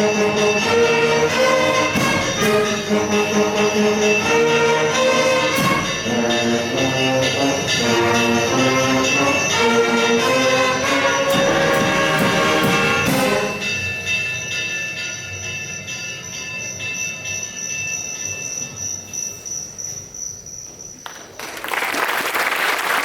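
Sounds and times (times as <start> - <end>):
wind band playing: 0.0 - 13.8
percussion: 0.0 - 23.0.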